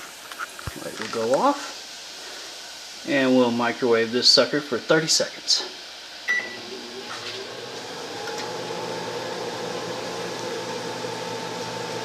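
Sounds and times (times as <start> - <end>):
microwave oven humming: 6.3 - 12.0.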